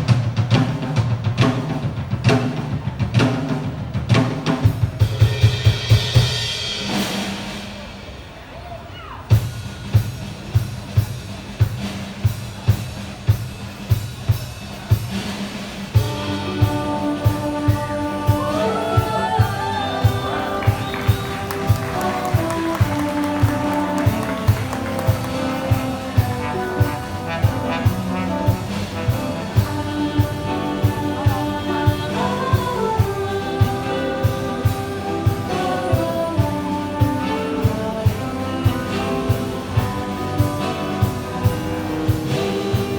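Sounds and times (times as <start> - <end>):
drum kit beat: 0.0 - 8.2, 9.4 - 42.9
brass section chords and melody: 16.0 - 42.9.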